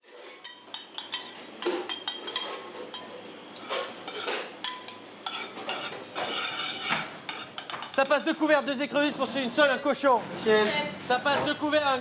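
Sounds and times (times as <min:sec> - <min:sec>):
plates and utensils clinking: 0:00.1 - 0:08.2.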